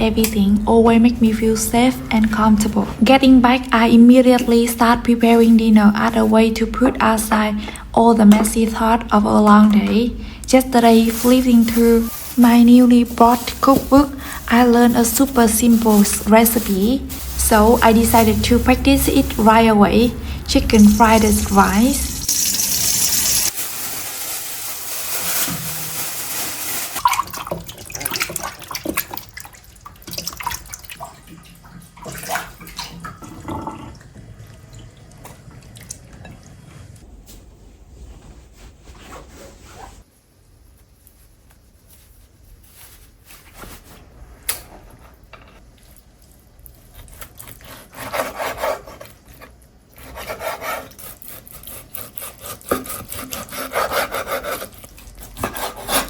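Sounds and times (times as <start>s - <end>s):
water running at a sink: 20.7s - 23.6s, 26.9s - 36.6s
rubbing and scraping: 38.0s - 40.1s, 47.6s - 56.0s.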